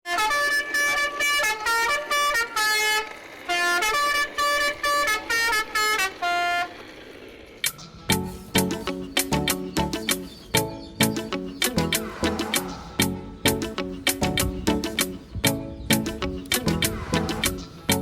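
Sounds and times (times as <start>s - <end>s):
musical horn tune: 0.0s - 6.8s
music with sharp clicks: 7.6s - 12.7s, 13.5s - 18.0s.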